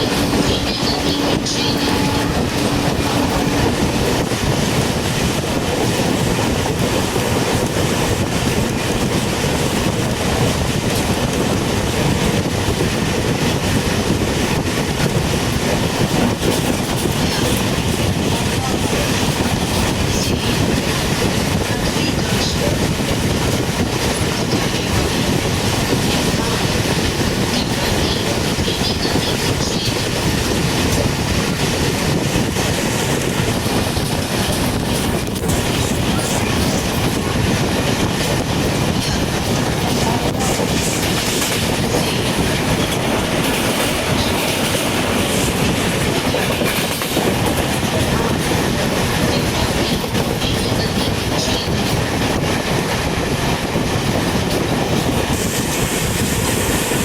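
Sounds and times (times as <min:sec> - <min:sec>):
train wheels clattering over rails: 0:00.0 - 0:57.0.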